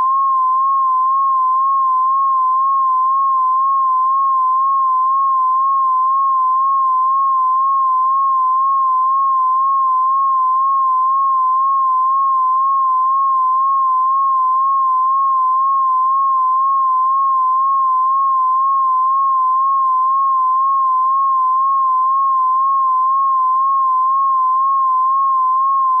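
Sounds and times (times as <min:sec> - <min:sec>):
wavering electronic tone: 0:00.0 - 0:08.2.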